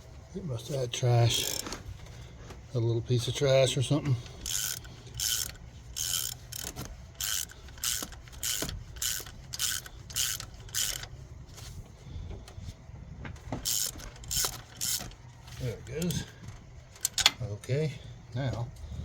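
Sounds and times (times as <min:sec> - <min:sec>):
ratchet wrench clicking: 0:01.3 - 0:01.7, 0:04.2 - 0:11.1, 0:13.6 - 0:15.2.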